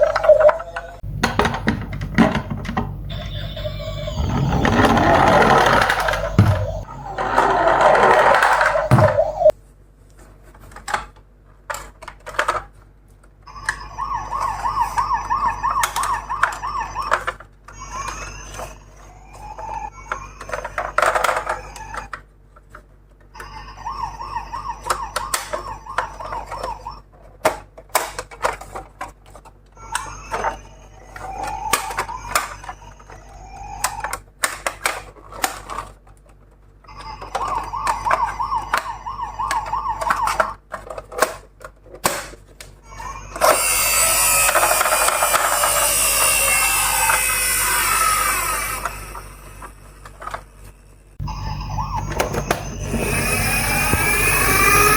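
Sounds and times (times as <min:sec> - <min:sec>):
toy electronic siren warbling: 0:03.1 - 0:09.5, 0:13.9 - 0:17.2, 0:51.2 - 0:54.9
toy cars clicking and clattering: 0:03.6 - 0:09.5, 0:10.6 - 0:12.7, 0:13.6 - 0:50.7.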